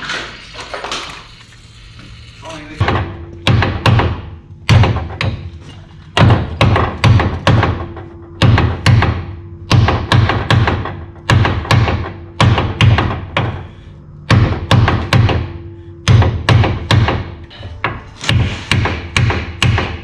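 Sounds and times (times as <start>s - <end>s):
hammer blows ringing: 6.2s - 20.0s.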